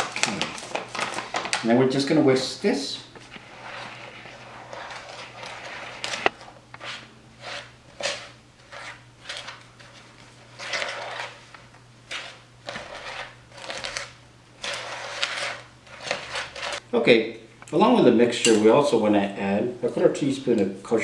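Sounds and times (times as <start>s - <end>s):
whisk scraping in bowl: 3.3s - 10.0s, 12.1s - 16.8s.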